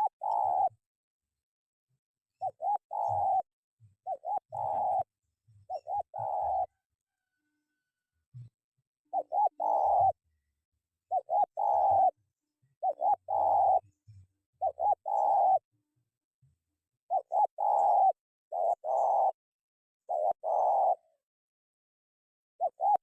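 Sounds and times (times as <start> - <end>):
dove cooing: 0.0 - 0.8, 2.4 - 5.1, 5.7 - 6.7, 9.1 - 10.2, 11.1 - 12.2, 12.8 - 13.9, 14.6 - 15.7, 17.1 - 19.4, 20.1 - 21.2, 22.6 - 23.0.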